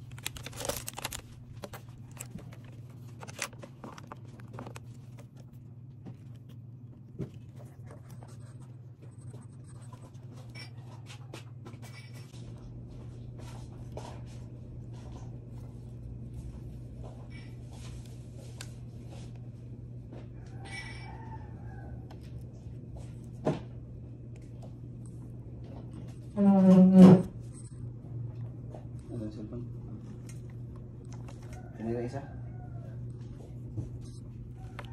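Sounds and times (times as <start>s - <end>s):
hands handling and unpacking items: 0.0s - 19.6s
steady low hum: 0.0s - 34.9s.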